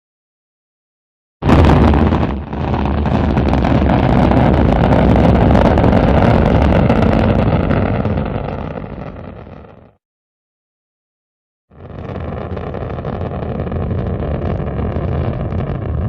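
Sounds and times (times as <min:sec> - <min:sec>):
rocket engines rumbling: 0:01.4 - 0:09.7, 0:11.8 - 0:16.0.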